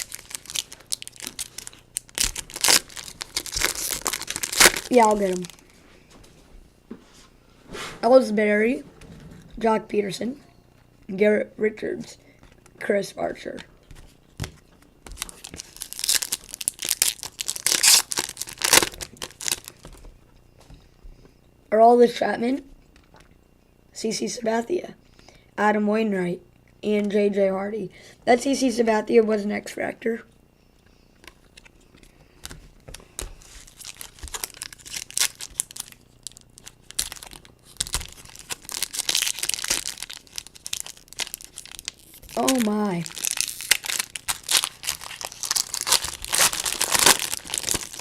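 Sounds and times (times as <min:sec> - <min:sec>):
foil wrapper tearing and crinkling: 0:00.0 - 0:05.7, 0:15.1 - 0:20.0, 0:32.4 - 0:48.0.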